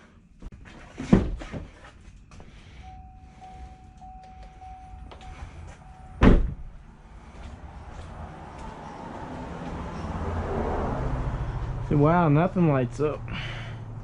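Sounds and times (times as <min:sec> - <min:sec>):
car electronic warning chime: 0:02.8 - 0:06.4
car door thudding shut: 0:06.2 - 0:06.7.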